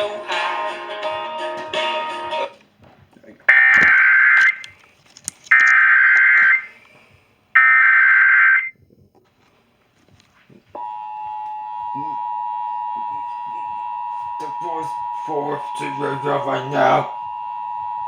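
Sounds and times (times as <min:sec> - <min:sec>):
digital data tone bursts: 0:13.0 - 0:18.0.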